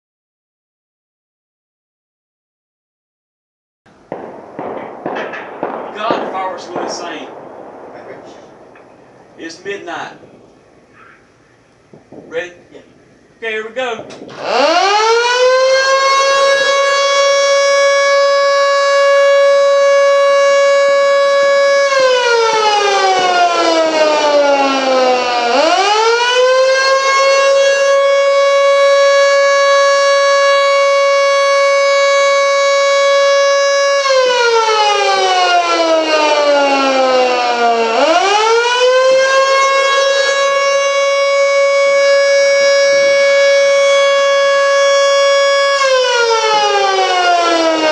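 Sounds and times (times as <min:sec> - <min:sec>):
air raid siren winding up and down: 0:14.0 - 0:47.9.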